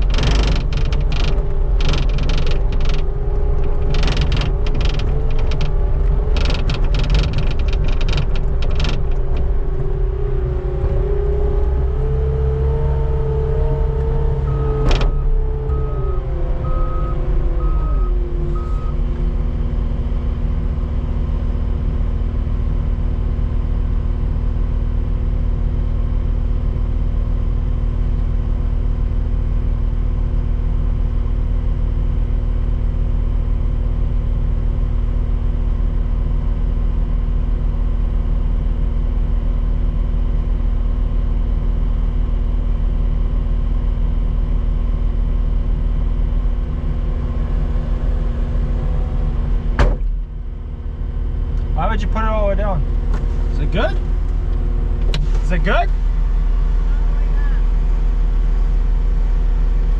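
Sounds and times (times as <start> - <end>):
skid steer engine running: 0.0 - 59.9
backup alarm beeping: 14.5 - 19.0.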